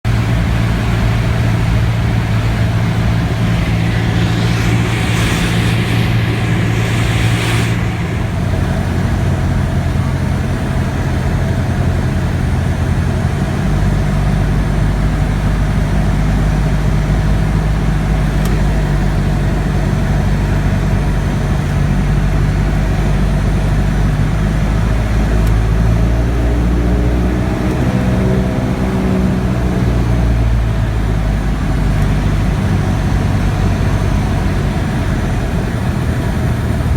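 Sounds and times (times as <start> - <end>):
aircraft engine droning in cockpit: 0.1 - 36.9
brief hiss: 1.8 - 9.9.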